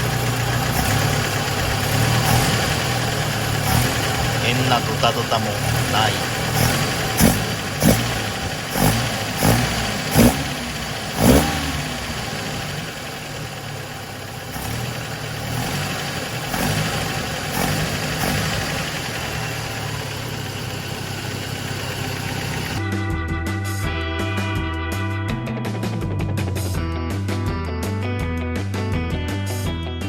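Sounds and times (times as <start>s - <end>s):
engine throttle blips: 0.0s - 23.2s
car engine idling: 0.0s - 25.0s.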